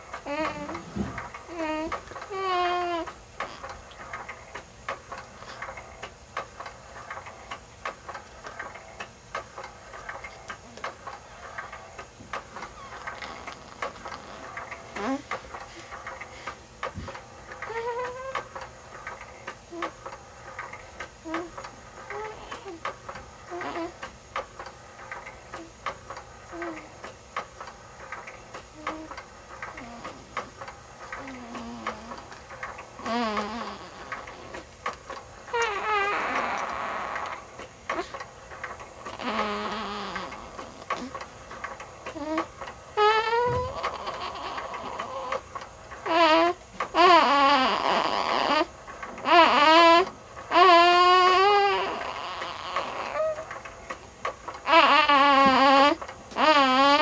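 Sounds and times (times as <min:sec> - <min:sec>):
baby humming: 0:00.2 - 0:03.7, 0:12.8 - 0:15.3, 0:17.7 - 0:18.4, 0:19.7 - 0:20.0, 0:21.2 - 0:22.9, 0:23.5 - 0:24.0, 0:26.5 - 0:27.0, 0:28.8 - 0:29.2, 0:29.8 - 0:30.2, 0:31.2 - 0:32.3, 0:33.0 - 0:34.6, 0:35.5 - 0:37.4, 0:39.0 - 0:41.2, 0:42.1 - 0:45.4, 0:46.0 - 0:53.5, 0:54.6 - 0:57.0.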